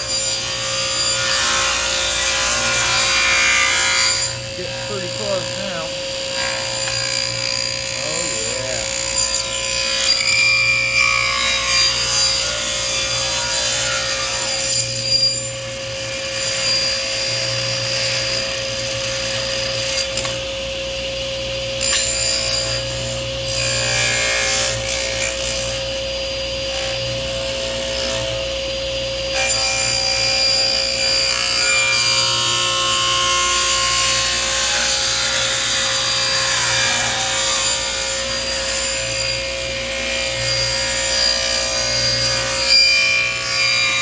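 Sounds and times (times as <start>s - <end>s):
table saw motor hum: 0.0s - 20.4s
saw blade cutting wood: 0.0s - 20.5s, 21.8s - 25.8s, 29.3s - 44.0s.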